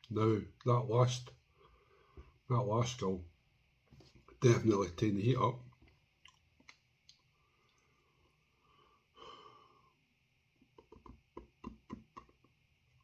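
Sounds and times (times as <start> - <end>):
lip smacks and clicks: 5.8 - 7.8, 10.7 - 12.6.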